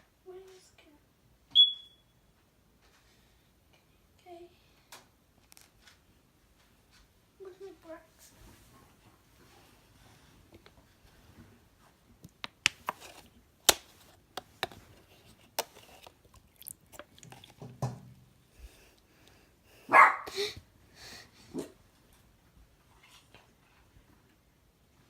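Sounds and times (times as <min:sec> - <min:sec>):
clicks and knocks of handling: 0:12.2 - 0:18.1.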